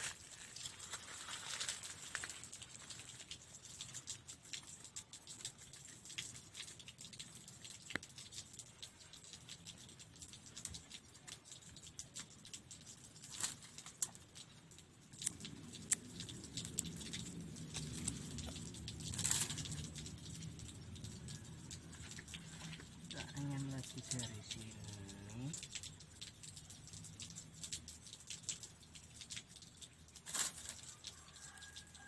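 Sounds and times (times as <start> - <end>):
low steady rumble: 15.3 - 28.0.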